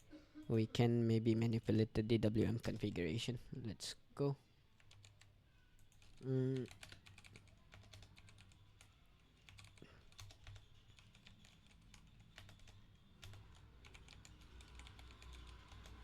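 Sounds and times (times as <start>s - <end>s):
faint keyboard typing clicks: 2.6s - 3.0s, 4.8s - 16.0s.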